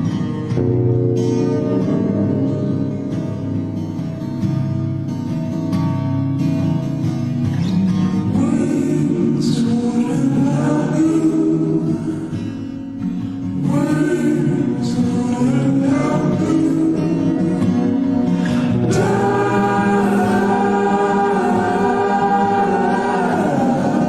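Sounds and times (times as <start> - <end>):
guitar: 0.0 - 24.0
person singing: 8.3 - 12.4, 13.6 - 24.0.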